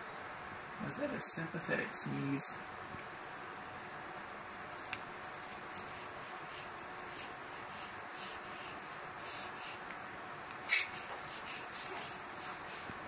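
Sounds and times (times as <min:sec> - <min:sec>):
dog sneezing: 0:10.6 - 0:11.2.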